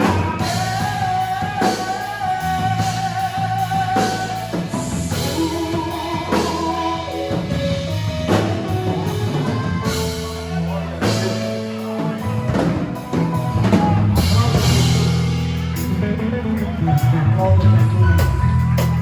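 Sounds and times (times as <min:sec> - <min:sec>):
gospel band playing: 0:00.0 - 0:19.0.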